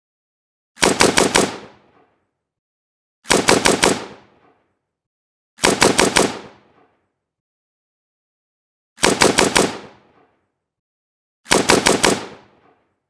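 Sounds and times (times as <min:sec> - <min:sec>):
automatic rifle bursts: 0:11.5 - 0:12.5.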